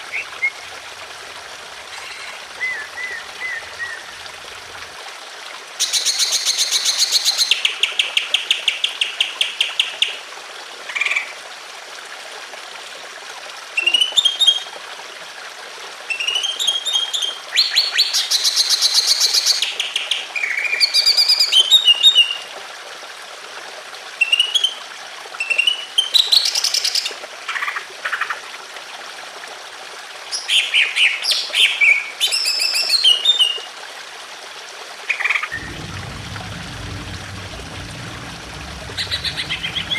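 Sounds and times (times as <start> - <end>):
water trickling: 0.0 - 19.8, 33.1 - 39.9
bird singing trills and whistles: 2.1 - 4.1.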